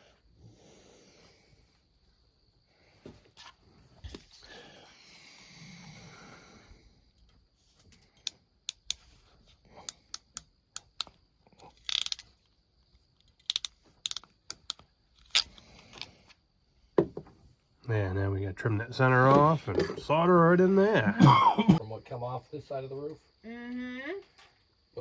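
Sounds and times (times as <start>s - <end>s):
hand tools clicking and tapping: 8.1s - 9.1s, 9.8s - 11.2s.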